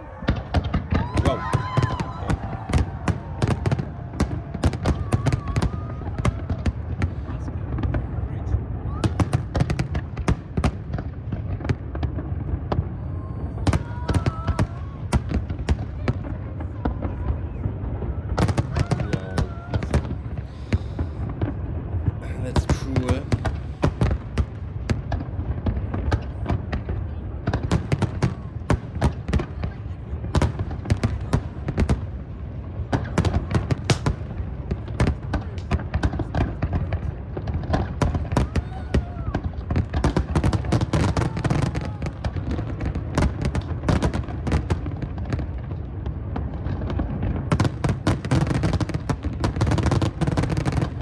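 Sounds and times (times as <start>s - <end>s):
distant explosions rumbling: 0.0s - 51.0s
fireworks bangs and crackles: 0.0s - 51.0s.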